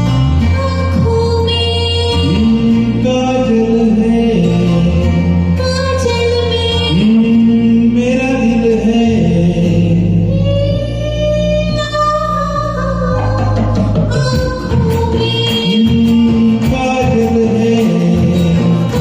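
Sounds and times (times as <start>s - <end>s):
film song backing music: 0.0s - 19.0s.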